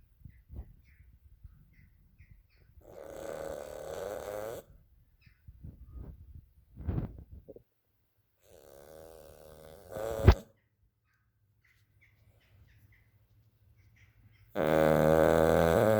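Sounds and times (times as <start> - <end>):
dog snoring: 2.8 - 4.7, 8.4 - 10.5, 14.6 - 15.9
dog snorting: 2.8 - 4.7, 8.4 - 10.5, 14.6 - 15.9.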